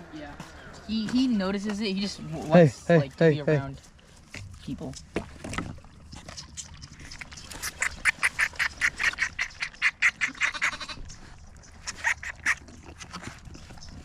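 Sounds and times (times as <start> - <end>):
animal calling rapidly: 6.4 - 11.0, 11.8 - 12.9.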